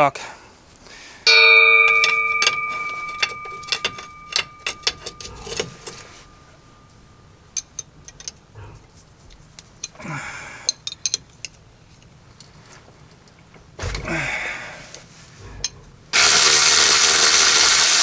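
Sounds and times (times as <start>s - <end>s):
scraping rustle: 0.9s - 7.0s, 11.4s - 16.1s
light metallic clinks: 1.3s - 8.5s, 10.6s - 14.1s.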